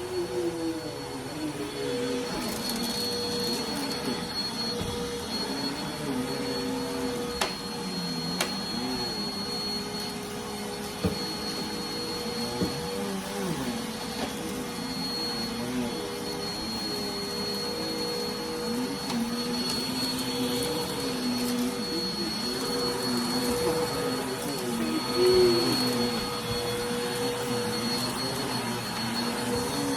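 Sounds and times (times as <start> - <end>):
vacuum cleaner running: 0.0 - 29.9.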